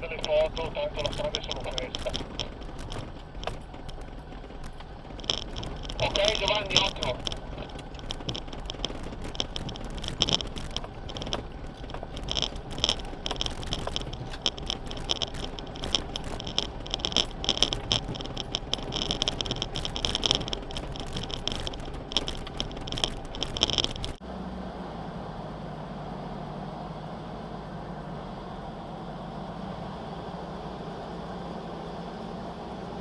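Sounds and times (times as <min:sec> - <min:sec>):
rattling and jangling clinks: 0:00.0 - 0:24.2
low rumble of vehicle: 0:00.0 - 0:33.0
steady engine hum: 0:00.0 - 0:33.0.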